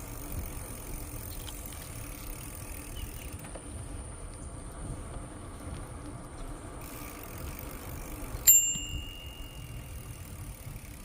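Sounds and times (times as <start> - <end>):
bike rolling rumble: 0.0 - 11.0
bicycle bell ding: 8.4 - 10.1.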